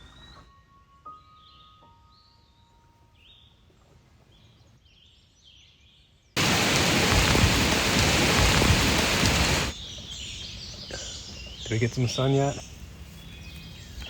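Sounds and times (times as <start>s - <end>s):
heavy rain pouring: 6.4s - 9.8s.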